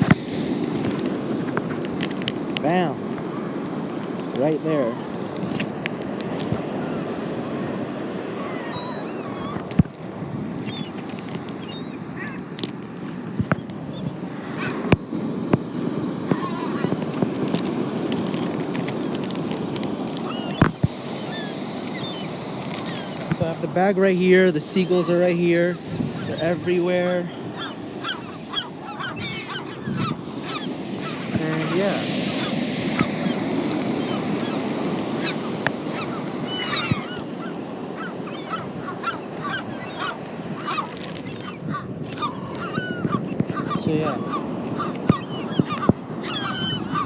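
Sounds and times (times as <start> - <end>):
beach surf: 0.0 - 47.0
wind buffeting microphone: 0.0 - 47.0
seagulls squawking: 4.7 - 9.9, 10.6 - 15.0, 16.3 - 19.5, 20.1 - 47.0
faint gull calls: 6.6 - 7.6, 8.2 - 9.9, 10.6 - 15.0, 16.3 - 17.3, 20.2 - 23.3, 24.2 - 47.0.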